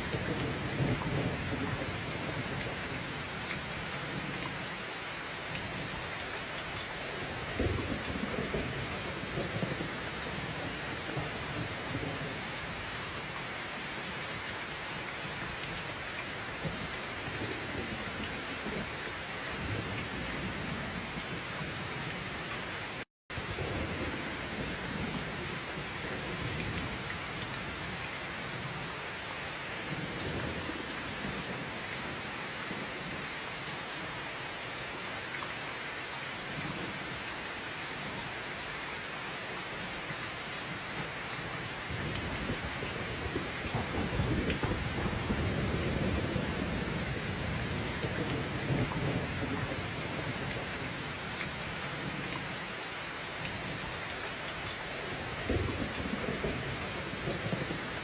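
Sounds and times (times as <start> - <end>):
heavy rain falling: 0.0 - 58.0
low thunder rumbling: 41.9 - 51.0.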